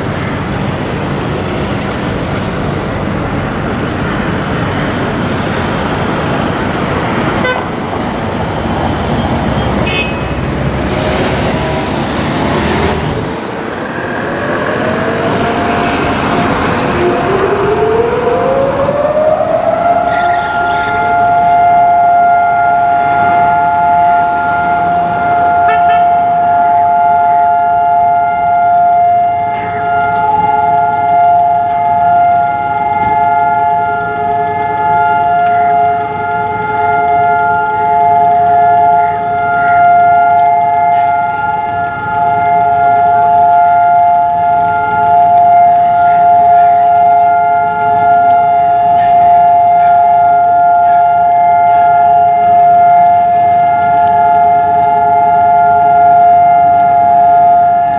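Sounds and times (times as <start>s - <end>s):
air-raid sirens winding up: 0.0s - 57.9s
road traffic: 0.0s - 57.9s.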